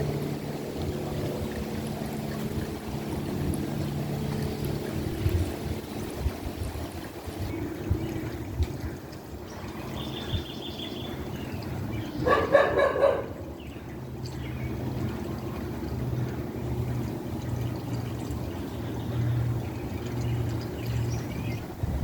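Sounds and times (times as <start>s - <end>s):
low steady hum: 0.0s - 22.0s
dog barking: 12.2s - 13.4s.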